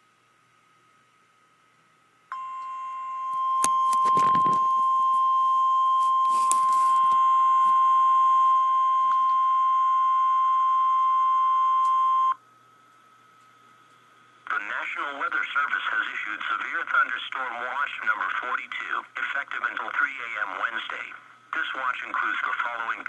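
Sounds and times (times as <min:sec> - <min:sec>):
radio crackle: 0:03.6 - 0:05.3, 0:06.0 - 0:07.8, 0:14.4 - 0:23.0.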